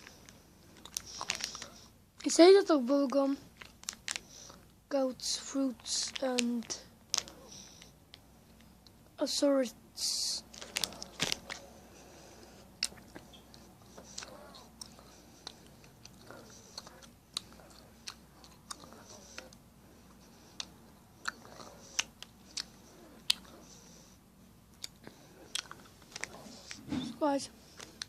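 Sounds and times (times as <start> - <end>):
quiet chewing: 0.0 - 2.3, 10.5 - 26.9, 27.6 - 28.0
gumballs crunching: 0.7 - 2.3, 3.5 - 4.6, 5.8 - 8.2, 10.4 - 11.7, 12.8 - 19.6, 20.5 - 23.6, 24.7 - 26.8.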